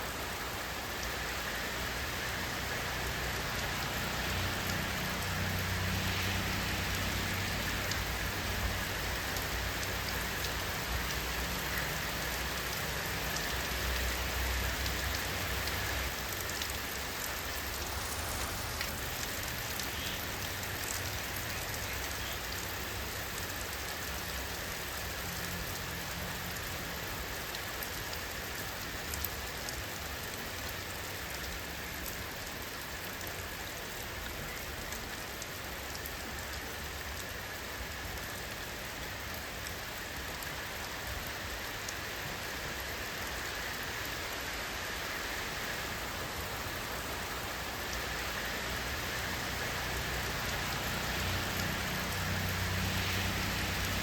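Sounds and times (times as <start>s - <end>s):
rain pattering: 0.0s - 54.0s.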